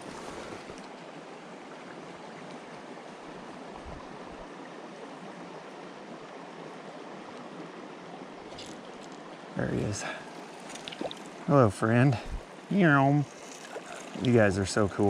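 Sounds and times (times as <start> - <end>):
creek water running: 0.0 - 15.0.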